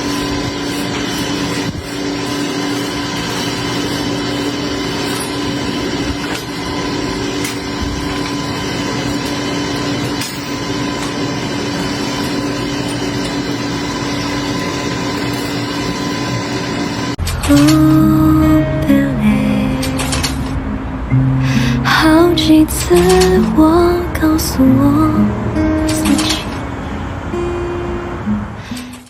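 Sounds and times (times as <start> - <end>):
rattling noise: 0.0 - 18.2, 19.7 - 20.6
rolling gate motor humming: 0.0 - 20.8, 21.4 - 27.5
music: 17.2 - 29.0.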